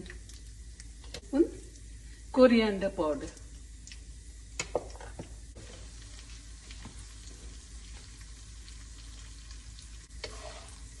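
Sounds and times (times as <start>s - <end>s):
spices frying in hot oil: 0.0s - 11.0s.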